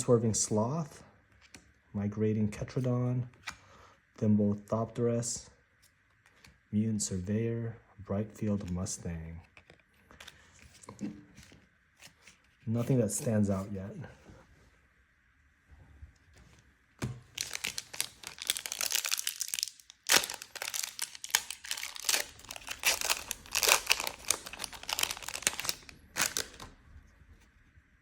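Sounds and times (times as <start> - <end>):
foil wrapper crinkling: 17.3 - 26.7.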